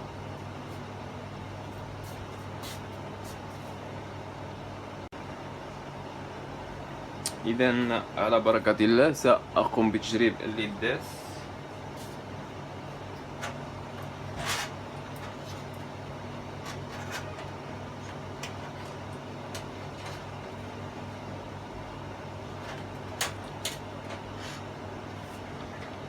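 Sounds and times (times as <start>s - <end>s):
low electrical hum: 0.0s - 26.0s.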